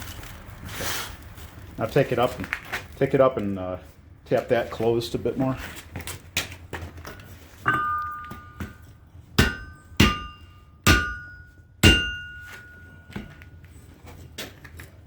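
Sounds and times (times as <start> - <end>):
hammer striking steel on anvil: 7.7 - 13.4.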